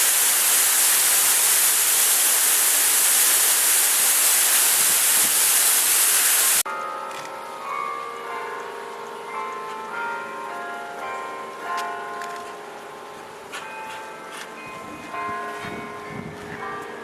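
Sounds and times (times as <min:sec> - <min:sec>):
waterfall rushing: 0:00.0 - 0:06.6
church bells ringing: 0:06.6 - 0:17.0.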